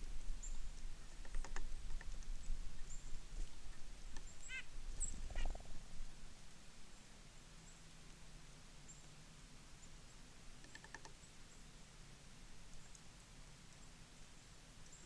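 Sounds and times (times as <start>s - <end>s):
songbird chip calls: 4.1s - 5.8s.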